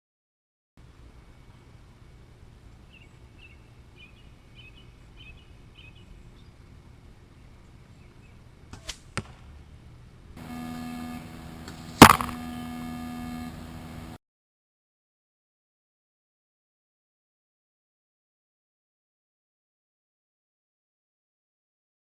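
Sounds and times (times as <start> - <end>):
arrow striking target: 8.7 - 9.4, 11.6 - 12.6
bow release crack: 8.7 - 9.4, 11.6 - 12.4
electrical hum: 10.3 - 14.2.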